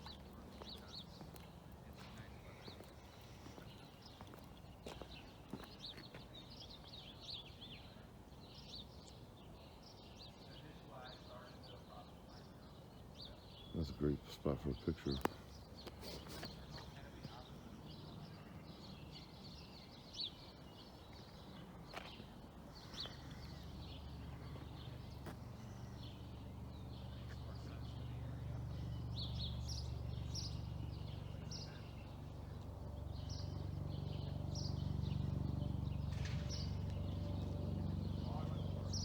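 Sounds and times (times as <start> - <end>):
small birds chirping: 0.0 - 39.0
low steady hum: 16.8 - 39.0.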